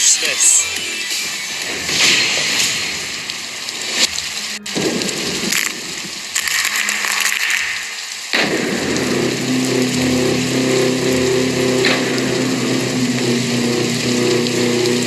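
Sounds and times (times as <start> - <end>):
rain falling: 0.0 - 15.0
low held tones: 8.5 - 15.0.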